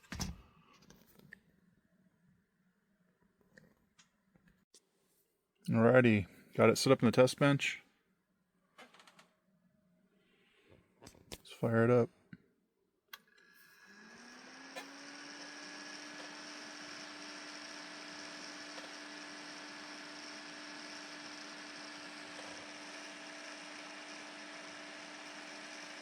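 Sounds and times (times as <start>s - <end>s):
computer cooling fans whirring: 13.9s - 26.0s.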